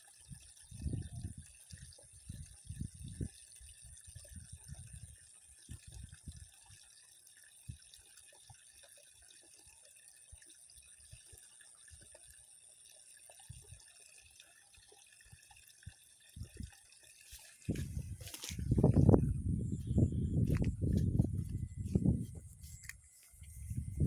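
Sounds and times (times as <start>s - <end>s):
water drips and plops: 0.0s - 19.8s
high-pitched hum: 18.8s - 24.0s.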